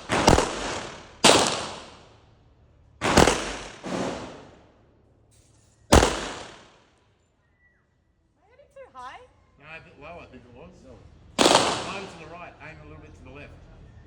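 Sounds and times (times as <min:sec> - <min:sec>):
gunshots with echo: 0:00.0 - 0:02.1, 0:03.0 - 0:04.7, 0:05.9 - 0:06.8, 0:11.4 - 0:12.3.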